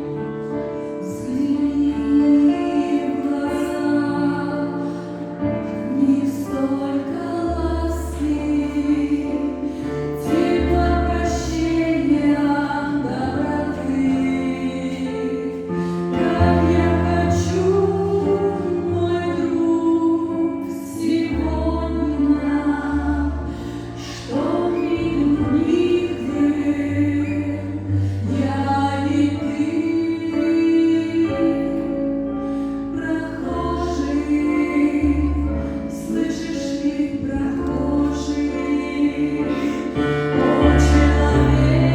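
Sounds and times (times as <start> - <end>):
choir singing: 5.9 - 19.6, 36.0 - 41.9.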